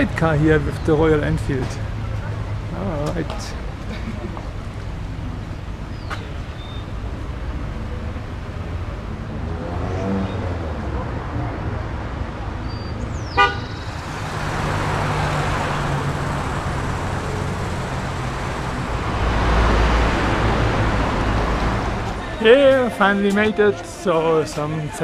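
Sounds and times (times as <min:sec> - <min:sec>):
traffic engines rumbling: 0:00.0 - 0:25.0
car horn toot: 0:13.3 - 0:14.0.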